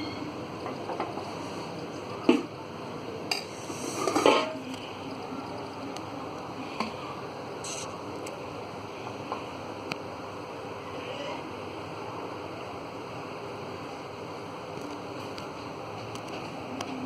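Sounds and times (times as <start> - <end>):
metal spoon scraping a pan: 3.4 - 4.6.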